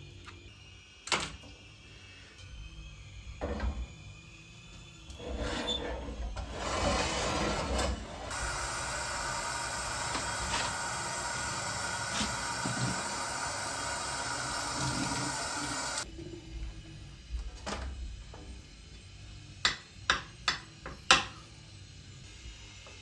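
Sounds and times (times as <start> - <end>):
water running: 8.3 - 16.0.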